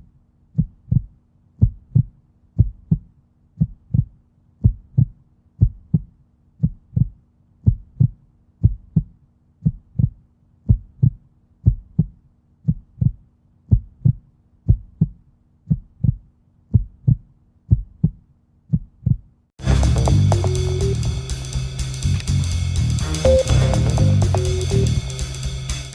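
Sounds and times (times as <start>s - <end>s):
human heartbeat: 0.6s - 19.3s.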